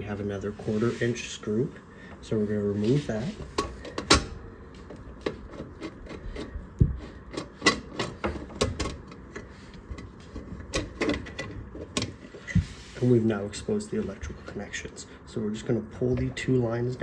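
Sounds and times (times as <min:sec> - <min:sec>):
screw clicking and scraping metal: 0:05.2 - 0:08.2.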